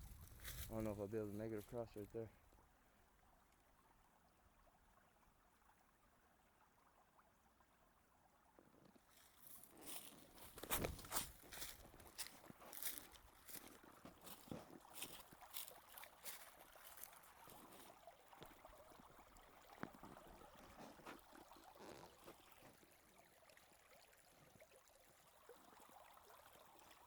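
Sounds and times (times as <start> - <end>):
light crunching footsteps: 0.0 - 2.2, 9.0 - 18.6
creek trickling over rocks: 0.0 - 27.0.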